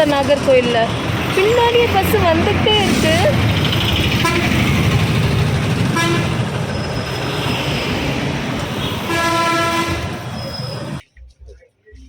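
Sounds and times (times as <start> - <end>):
road traffic noise: 0.0 - 12.0
bus horn honking: 4.2 - 4.9, 5.8 - 6.6, 8.6 - 11.0.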